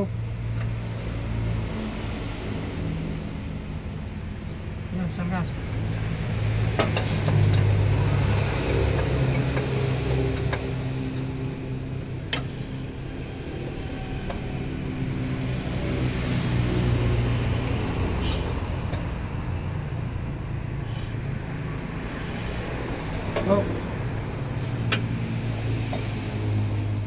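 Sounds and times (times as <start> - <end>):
diesel truck engine revving: 5.6 - 27.0.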